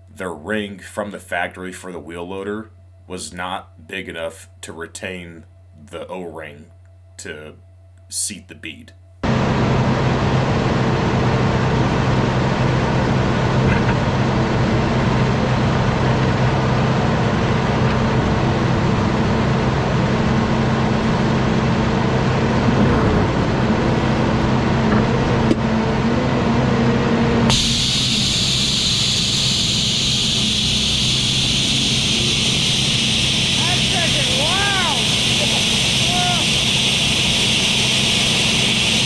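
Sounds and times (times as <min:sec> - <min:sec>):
diesel engine running: 0:09.2 - 0:39.0.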